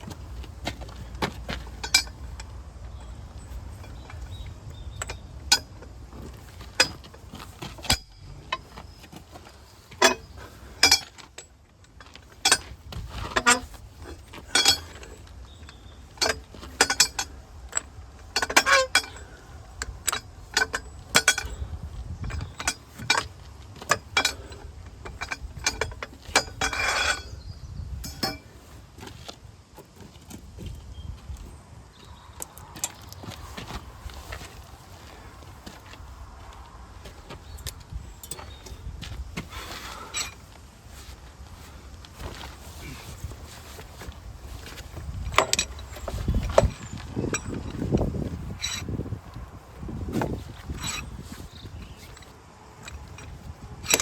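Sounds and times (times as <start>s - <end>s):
hand tools clinking on metal: 0.0s - 29.2s, 37.1s - 54.0s
ringing metal scrape: 50.1s - 54.0s.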